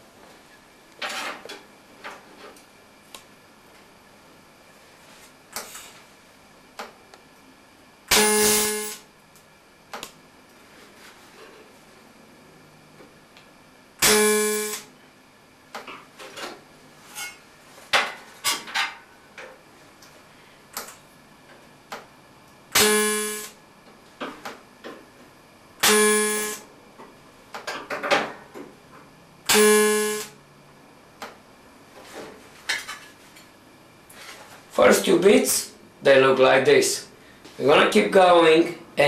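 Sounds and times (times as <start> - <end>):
welding arc buzzing: 8.0 - 9.1, 14.0 - 14.9, 22.7 - 23.6, 25.8 - 26.7, 29.4 - 30.4.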